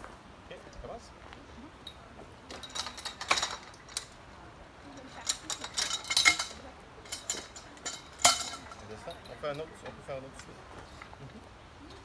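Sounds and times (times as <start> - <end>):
metal parts clinking and rattling: 1.8 - 10.0.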